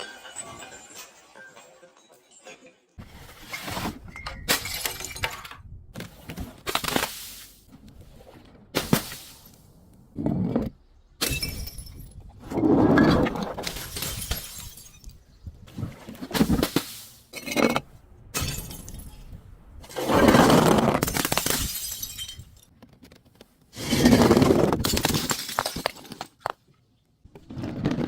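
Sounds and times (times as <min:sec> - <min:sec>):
glass bottles smashing: 0:00.0 - 0:02.8, 0:03.5 - 0:05.6, 0:11.2 - 0:12.2, 0:13.6 - 0:15.2, 0:18.4 - 0:19.4, 0:20.9 - 0:22.7, 0:24.8 - 0:26.4.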